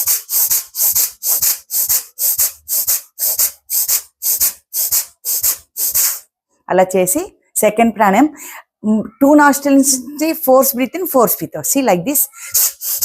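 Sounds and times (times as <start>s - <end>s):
forceful nasal breathing: 0.0s - 6.3s, 12.2s - 13.0s.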